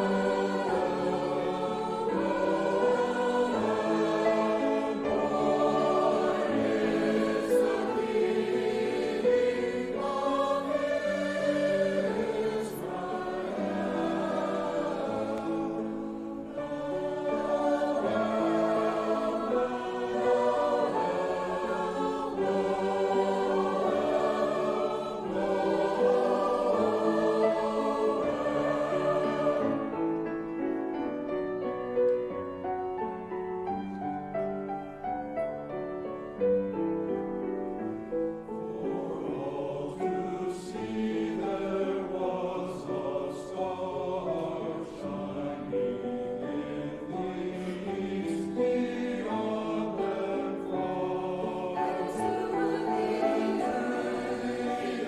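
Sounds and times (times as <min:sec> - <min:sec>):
congregation singing a hymn: 0:00.0 - 0:55.0.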